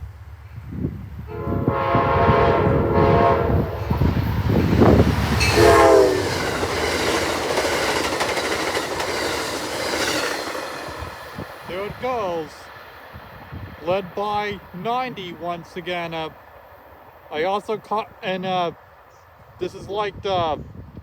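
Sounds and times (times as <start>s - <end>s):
train rumbling on rails: 0.0s - 21.0s
train horn blasts: 1.3s - 4.1s, 5.3s - 7.1s.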